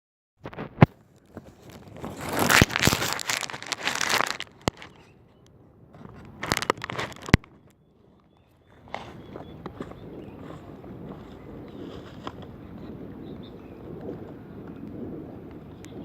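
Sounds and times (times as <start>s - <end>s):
rustling handling noise: 0.4s - 5.1s, 6.0s - 7.6s.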